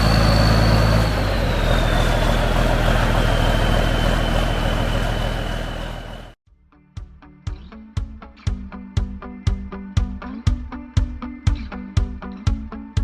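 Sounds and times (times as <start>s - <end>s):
diesel tractor engine running: 0.0s - 6.4s
high whine falling in pitch: 0.0s - 6.4s.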